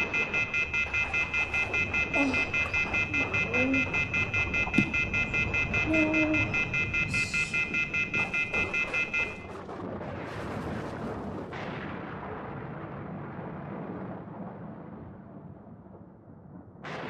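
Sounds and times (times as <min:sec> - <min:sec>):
telephone off-hook warning tone: 0:00.0 - 0:09.5.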